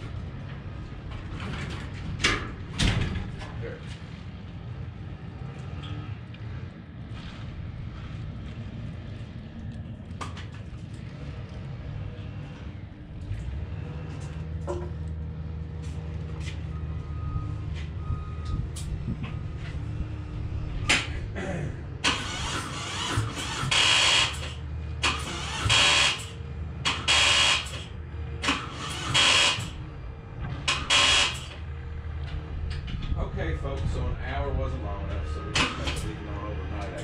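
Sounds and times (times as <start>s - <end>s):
low hum: 0.0s - 23.1s
motorcycle starter rattling: 22.0s - 29.8s.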